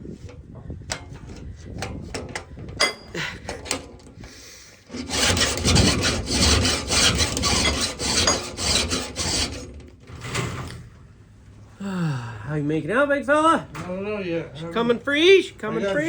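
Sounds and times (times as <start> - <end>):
hand file filing saw teeth: 4.9 - 9.7.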